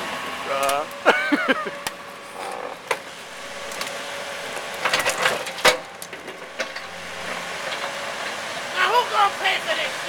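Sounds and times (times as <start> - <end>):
excavator hum: 0.0 - 10.0
metal crunching and banging: 2.6 - 8.2.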